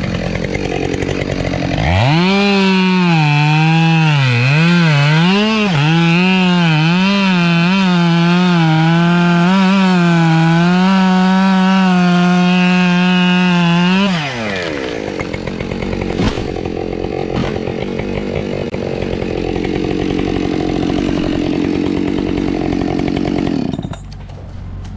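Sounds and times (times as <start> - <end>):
chainsaw cutting wood: 0.0 - 24.9
sharp knocks: 16.1 - 17.9.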